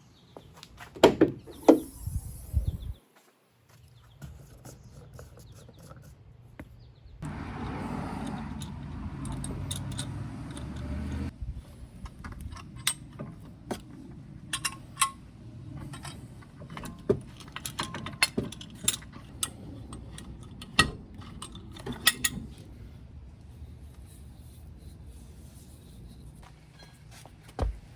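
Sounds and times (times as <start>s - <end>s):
metal tools clinking: 7.2s - 11.3s, 12.4s - 13.8s, 14.4s - 15.2s, 15.8s - 22.7s.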